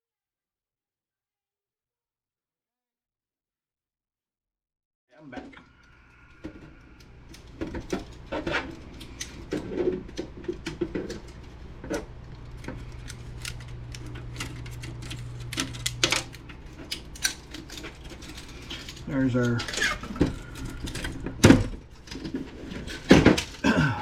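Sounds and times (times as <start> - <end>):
steady low hum: 5.6 - 24.0
plastic parts clicking and clattering: 5.8 - 23.6.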